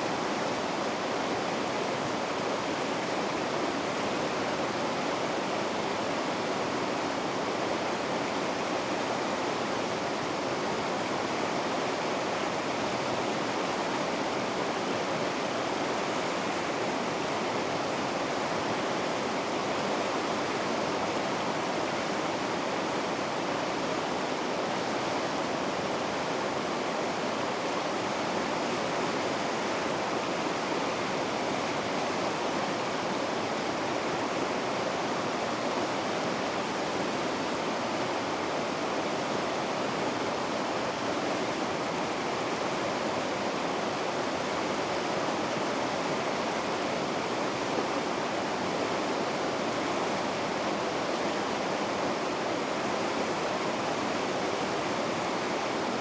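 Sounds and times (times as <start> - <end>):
river rapids rushing: 0.0 - 56.0.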